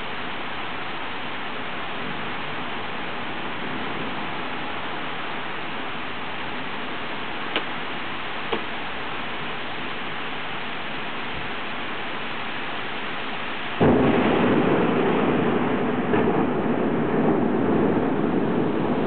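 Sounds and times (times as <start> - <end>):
heavy rain rushing: 0.0 - 19.0
thunderclap rumbling: 13.7 - 19.0.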